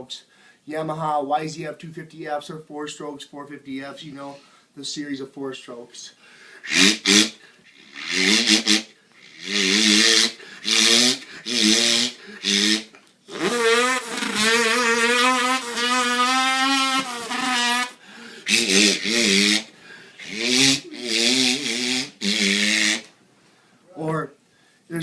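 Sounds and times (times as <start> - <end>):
man imitating motorbike engine: 6.7 - 23.1.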